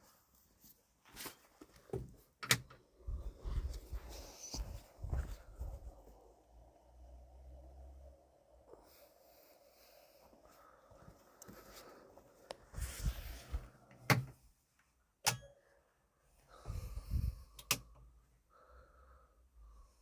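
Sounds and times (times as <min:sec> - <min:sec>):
rustling handling noise: 0:00.0 - 0:02.4.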